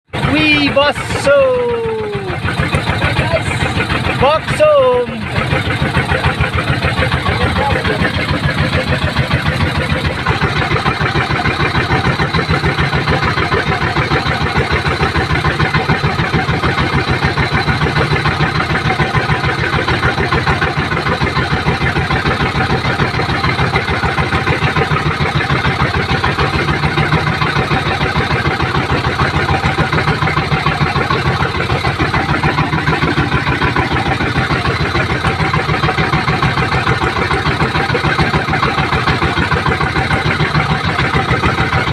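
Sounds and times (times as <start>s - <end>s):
boat engine running: 0.0s - 41.9s.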